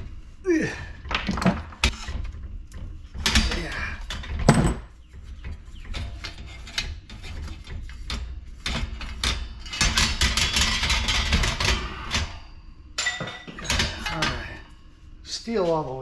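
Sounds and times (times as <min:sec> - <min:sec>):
metal parts clicking and knocking: 0:03.2 - 0:07.4.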